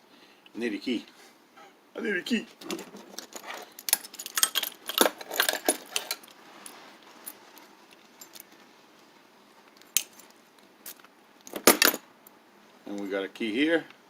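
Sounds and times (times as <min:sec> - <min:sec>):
keys jangling: 0:03.2 - 0:06.4.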